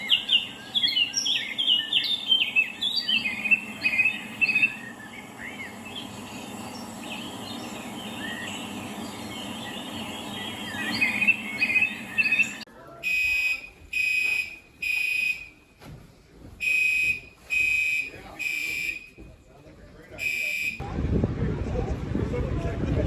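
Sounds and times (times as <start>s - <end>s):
birds chirping and twittering: 0.0s - 12.7s.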